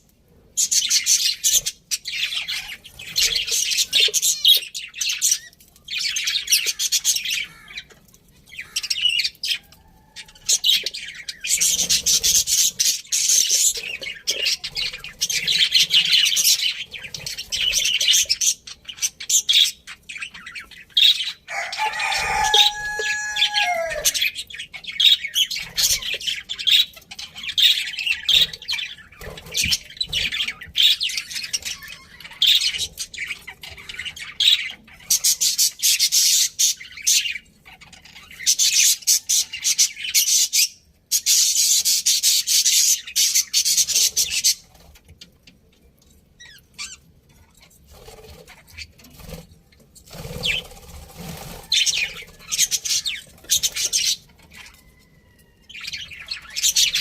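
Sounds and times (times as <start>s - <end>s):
budgies chirping and warbling: 0.3s - 57.0s
drawn-out bird call: 21.5s - 24.2s.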